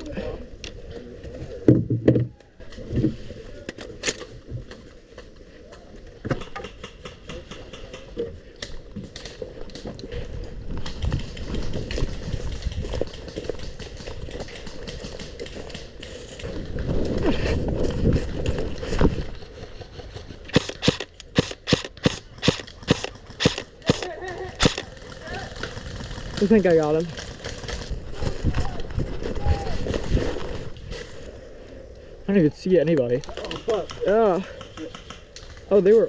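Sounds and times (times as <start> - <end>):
footsteps: 4.5 - 31.5
sharp clicks: 20.5 - 24.9.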